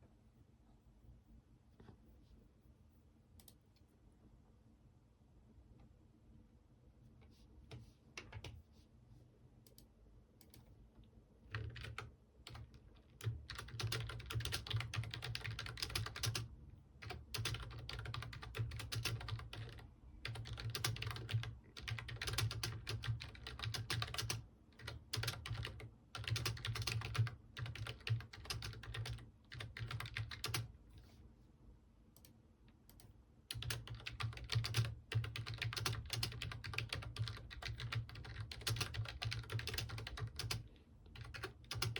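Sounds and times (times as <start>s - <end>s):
typing on computer keyboard: 11.5s - 30.7s, 32.9s - 41.9s.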